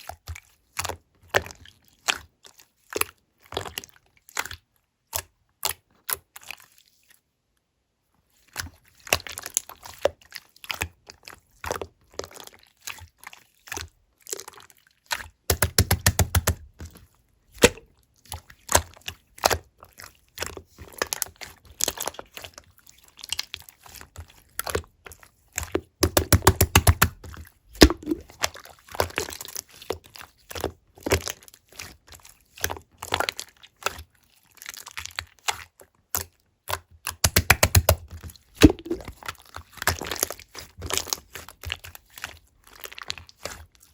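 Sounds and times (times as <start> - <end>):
sticky clicks and air pops: 15.5 - 16.6, 17.6 - 17.8, 26.0 - 27.2, 27.8 - 28.3, 37.2 - 38.0, 38.6 - 39.1
slime squeezed by hand: 17.6 - 17.9, 26.1 - 29.4, 38.6 - 41.1.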